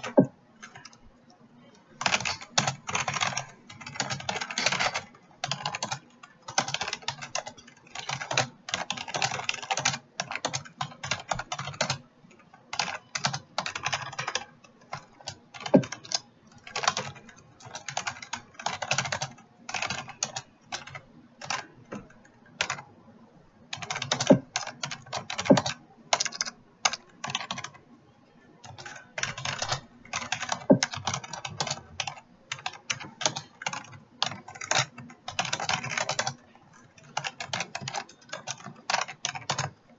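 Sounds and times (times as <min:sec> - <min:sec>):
fast keyboard typing: 0:00.0 - 0:22.9, 0:23.7 - 0:27.8, 0:28.4 - 0:39.9.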